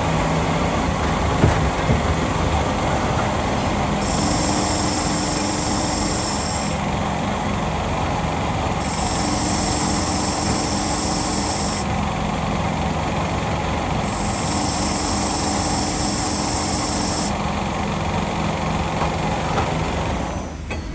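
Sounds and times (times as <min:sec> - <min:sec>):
high-pitched machine whine: 0:02.6 - 0:17.6
machine cutting steel: 0:03.4 - 0:07.3, 0:08.1 - 0:17.6.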